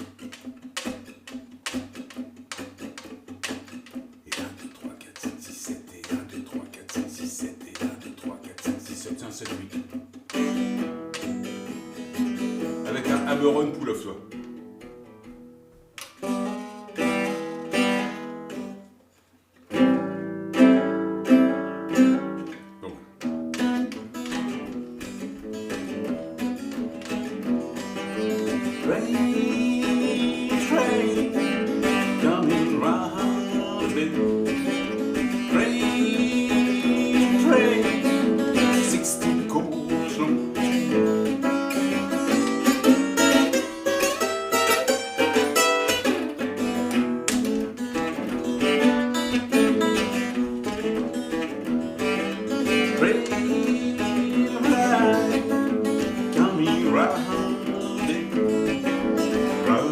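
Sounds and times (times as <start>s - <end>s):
acoustic guitar riff: 0.0s - 59.9s
man singing: 4.2s - 10.5s, 28.0s - 41.5s, 52.0s - 59.9s.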